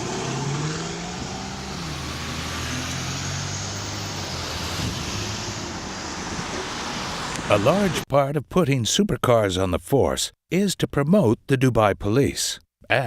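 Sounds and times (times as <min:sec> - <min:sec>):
road noise: 0:00.0 - 0:08.1.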